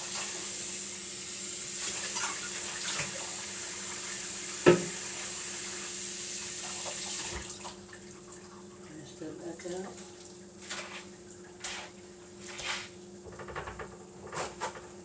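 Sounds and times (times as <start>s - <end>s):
tap running water into sink: 1.7s - 7.8s.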